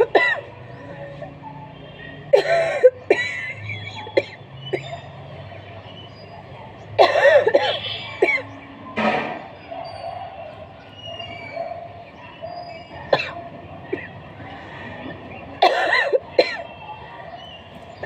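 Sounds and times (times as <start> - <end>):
woman coughing: 2.4 - 3.4, 7.0 - 8.5, 13.1 - 14.1, 15.6 - 16.6.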